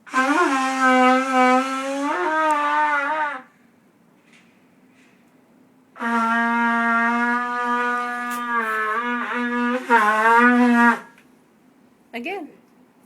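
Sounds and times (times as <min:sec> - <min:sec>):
bugle long note: 0:06.0 - 0:11.1.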